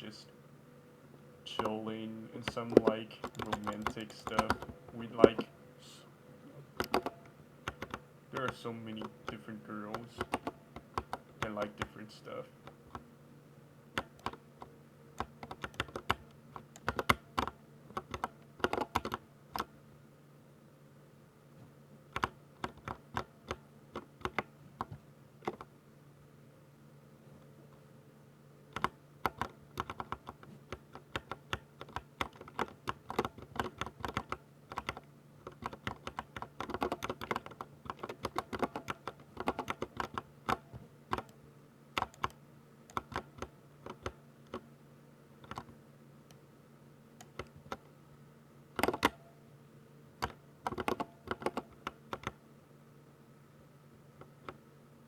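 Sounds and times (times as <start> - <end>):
faint steady hum: 0.0 - 55.0
fast mechanical keyboard typing: 2.4 - 5.5, 6.8 - 12.0, 14.0 - 14.4, 15.2 - 19.7, 22.2 - 25.7, 28.8 - 41.4, 42.0 - 44.6, 45.4 - 45.7, 48.8 - 49.2, 50.2 - 52.4.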